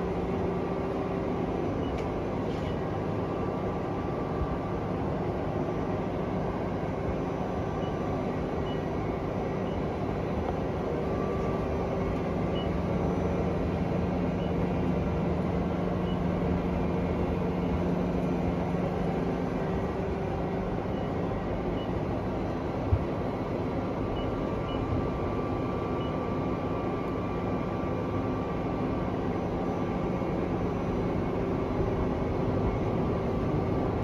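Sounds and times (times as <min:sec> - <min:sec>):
lathe machine hum: 0:00.0 - 0:34.0.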